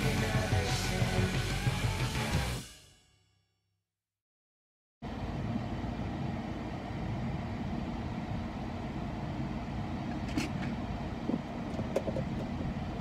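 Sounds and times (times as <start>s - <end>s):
car cabin rumble: 8.1s - 13.0s.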